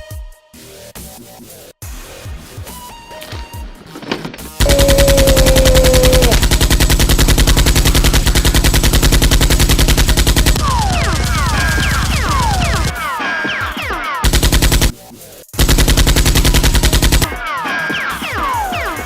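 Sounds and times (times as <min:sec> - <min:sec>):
falling whistles: 0:04.6 - 0:06.4
machine-gun fire: 0:04.6 - 0:13.0, 0:14.2 - 0:15.0, 0:15.6 - 0:17.4.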